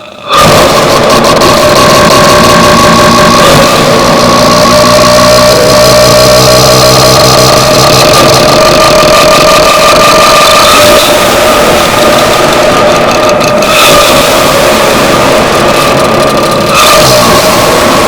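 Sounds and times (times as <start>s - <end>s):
harsh distorted noise: 0.0s - 18.0s
high drones: 0.0s - 18.0s
low droning tones: 0.0s - 18.0s.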